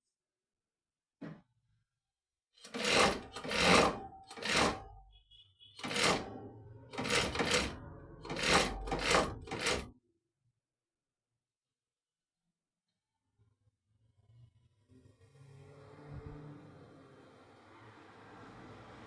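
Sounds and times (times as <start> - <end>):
industrial sewing machine running: 2.6 - 5.0, 5.8 - 9.9.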